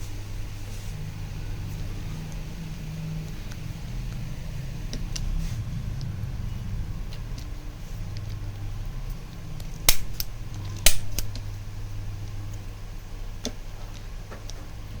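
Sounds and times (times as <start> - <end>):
adjustment gun clicking: 9.9 - 11.4.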